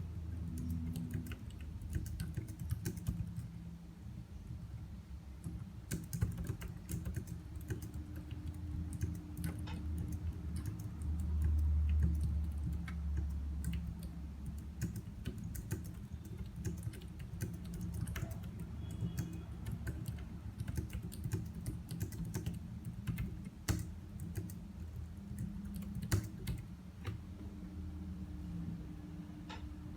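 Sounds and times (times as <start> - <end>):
fast typing on keyboard: 0.4 - 3.6, 5.4 - 26.7
low hum: 26.6 - 29.9.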